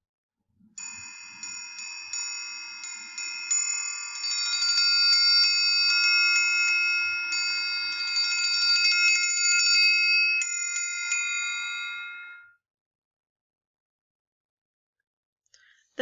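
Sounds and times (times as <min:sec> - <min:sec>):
triangle ringing: 0:00.8 - 0:12.6.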